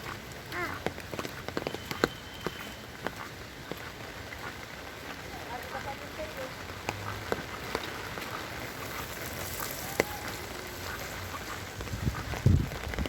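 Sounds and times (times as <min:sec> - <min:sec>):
sharp drip taps: 0:00.8 - 0:04.5
heavy rain hiss: 0:02.2 - 0:13.0.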